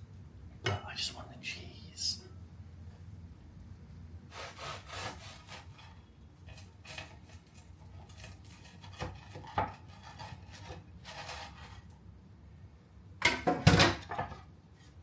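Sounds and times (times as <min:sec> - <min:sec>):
utensil scraping toasted sandwich: 0:04.3 - 0:12.0.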